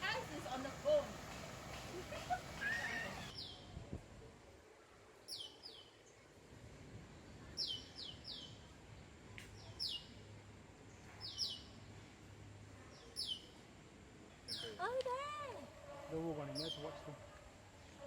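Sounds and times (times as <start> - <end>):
bird chirping: 11.2 - 11.8.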